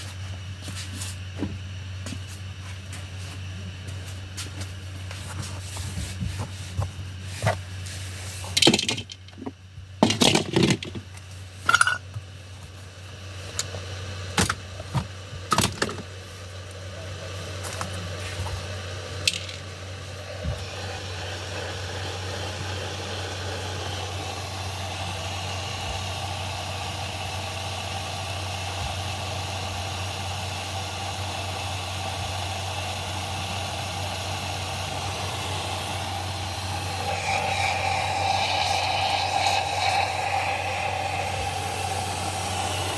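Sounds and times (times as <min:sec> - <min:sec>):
coffee machine humming: 0:00.0 - 0:42.9.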